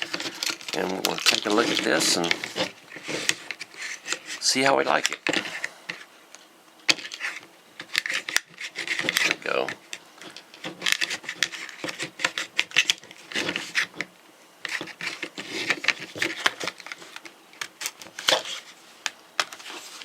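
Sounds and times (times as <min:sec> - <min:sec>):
plastic packaging crackling: 0:00.0 - 0:05.3, 0:14.7 - 0:20.0.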